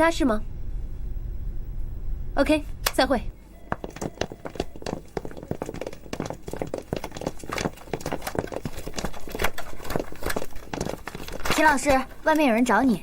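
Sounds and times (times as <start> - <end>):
footsteps on hard floor: 3.7 - 12.5.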